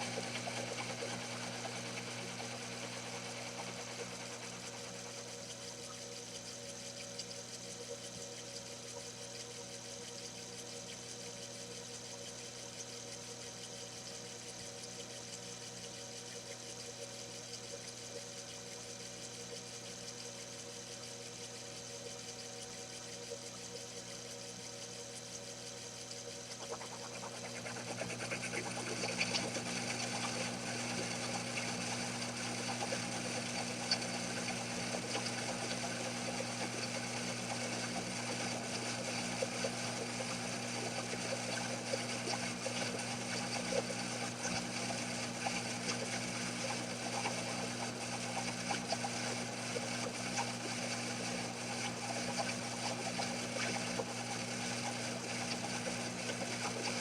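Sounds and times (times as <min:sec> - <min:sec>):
lathe motor humming: 0:26.5 - 0:43.4.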